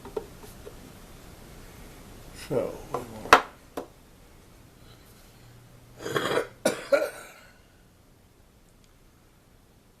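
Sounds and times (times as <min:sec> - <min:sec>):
man coughing: 0:06.0 - 0:07.6.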